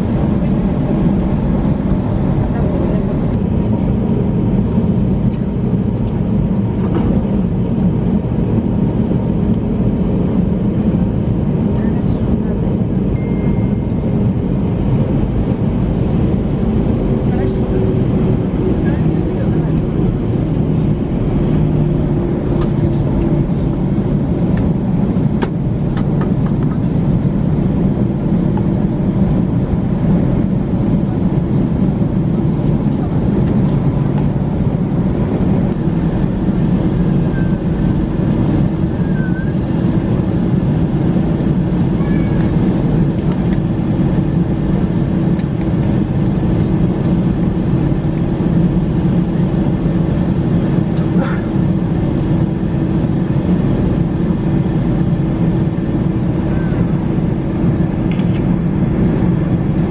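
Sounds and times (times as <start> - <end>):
aircraft cabin drone: 0.0 - 59.9.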